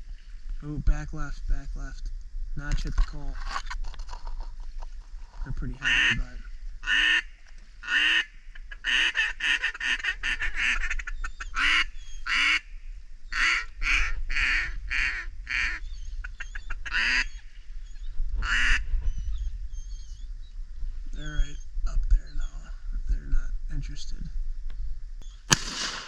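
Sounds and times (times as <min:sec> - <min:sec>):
duck call quacks: 0:05.8 - 0:12.7, 0:13.3 - 0:17.3, 0:18.4 - 0:18.8.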